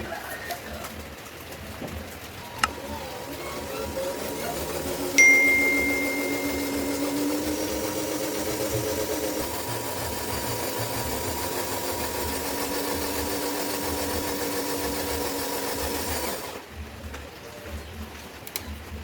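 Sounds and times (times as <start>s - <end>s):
small electric motor whirring: 2.6s - 16.6s.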